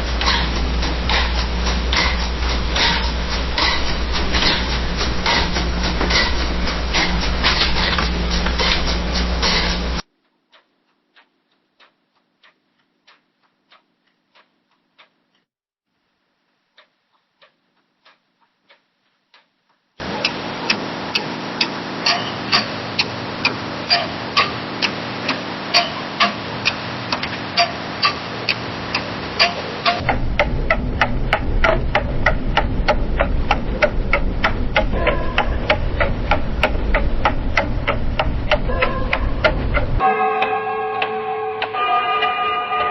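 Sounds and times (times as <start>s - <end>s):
low hum: 0.0s - 10.1s, 20.0s - 42.9s
room hiss: 0.0s - 15.3s, 15.9s - 40.1s
clock ticking: 0.0s - 15.5s, 16.7s - 42.9s.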